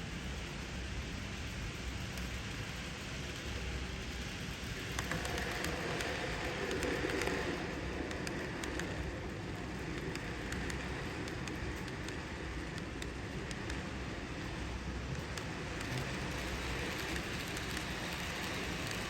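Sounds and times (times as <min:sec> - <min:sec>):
faint motor hum: 0:00.0 - 0:19.0
model train rolling hiss: 0:00.0 - 0:19.0
wheels clicking on rails: 0:00.1 - 0:19.0.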